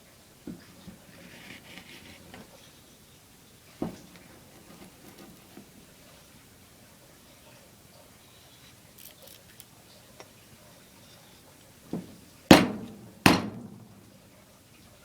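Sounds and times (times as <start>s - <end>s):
knife chopping: 0.5s - 2.5s, 3.8s - 5.8s, 12.0s - 14.0s.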